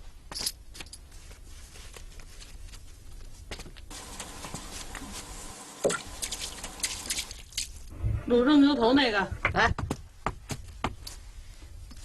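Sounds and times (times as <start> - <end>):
brushing strokes: 4.0 - 7.1.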